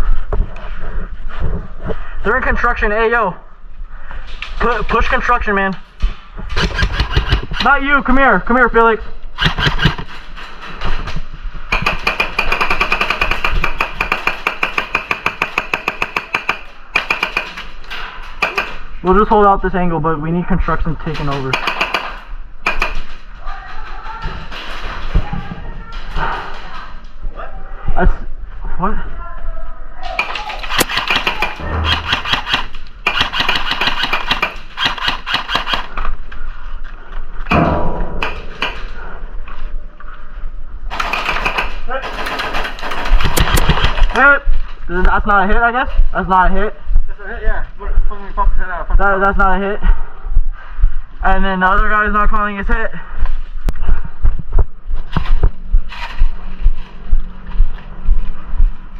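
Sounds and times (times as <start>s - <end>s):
airsoft gun full-auto burst: 6.6s - 7.7s, 9.4s - 10.0s, 11.7s - 17.6s, 30.6s - 35.9s.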